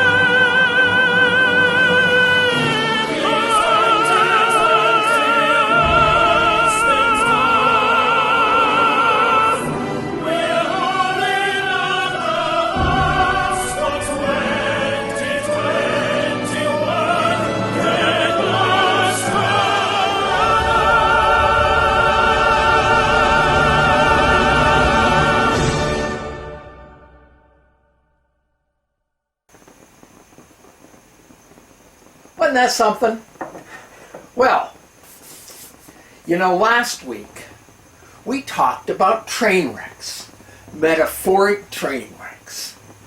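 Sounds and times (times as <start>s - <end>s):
man singing operatically: 0.0s - 25.6s, 38.2s - 42.9s.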